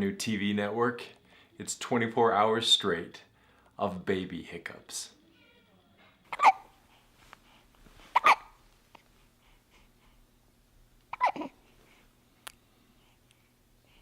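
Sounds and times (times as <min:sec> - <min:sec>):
baby hiccuping: 0:06.3 - 0:06.7, 0:08.1 - 0:08.6, 0:11.1 - 0:11.6.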